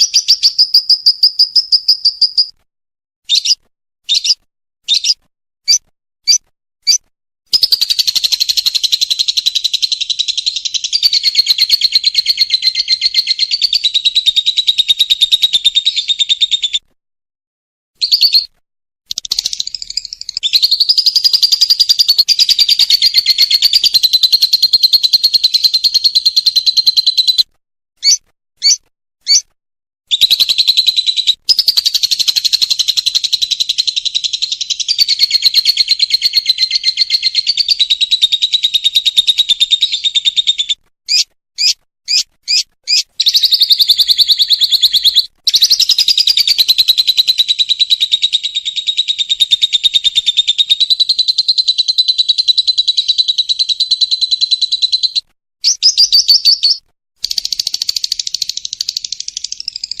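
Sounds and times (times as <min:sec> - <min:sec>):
lovebird short calls: 0:28.0 - 0:29.5, 0:41.1 - 0:43.6
lovebird fast high chatter: 0:41.1 - 0:47.5.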